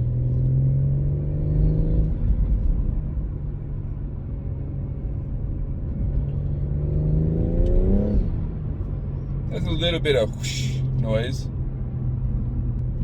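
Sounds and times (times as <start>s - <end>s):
car engine accelerating: 5.9s - 13.0s.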